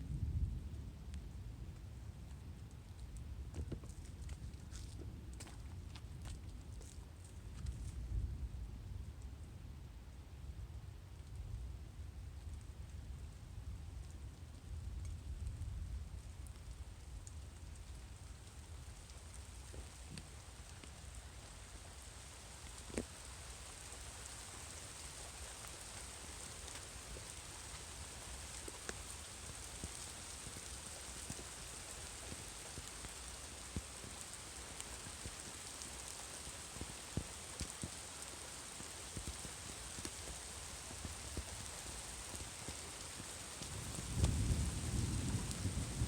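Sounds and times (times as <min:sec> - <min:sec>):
low rumble of thunder: 0:00.0 - 0:02.6, 0:43.6 - 0:46.0
rain falling steadily: 0:00.0 - 0:46.0.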